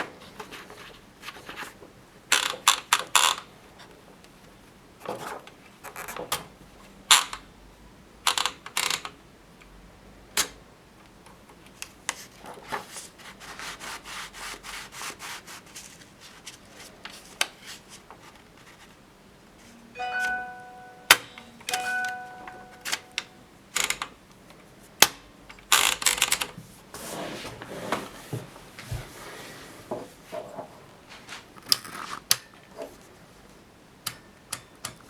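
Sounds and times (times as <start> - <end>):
typewriter keys clacking: 21.0 - 24.2.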